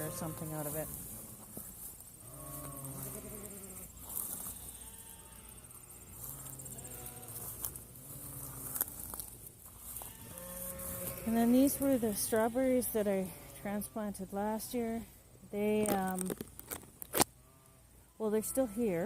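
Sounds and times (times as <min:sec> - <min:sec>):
farm animals bleating: 0:00.0 - 0:14.5, 0:17.3 - 0:19.0
insects chirring: 0:00.0 - 0:17.4.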